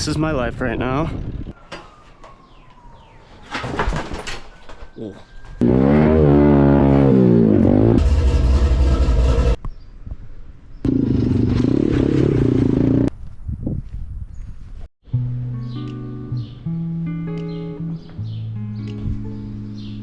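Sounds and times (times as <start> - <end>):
dirt bike engine revving: 5.6 - 9.6, 10.9 - 13.1.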